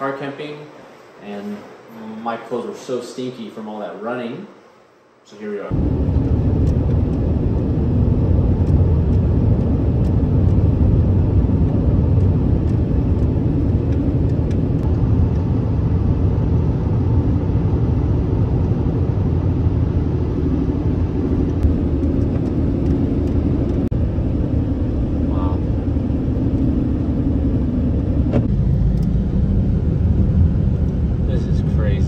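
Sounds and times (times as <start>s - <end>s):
tyres on the road: 5.7s - 15.9s
car engine rumble: 5.7s - 32.0s.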